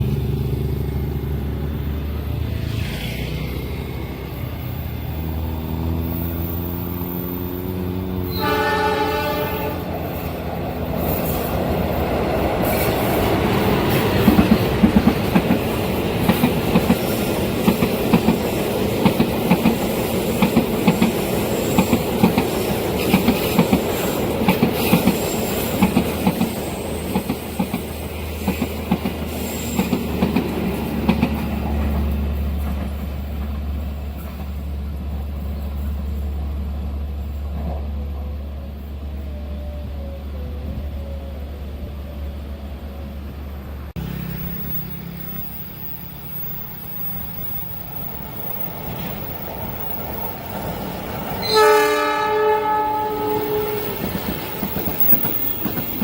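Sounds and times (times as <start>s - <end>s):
train engine rumble: 0.0s - 56.0s
train horn blast: 8.2s - 10.2s, 51.4s - 54.8s
train wheels clacking on rails: 9.3s - 36.6s, 53.0s - 56.0s.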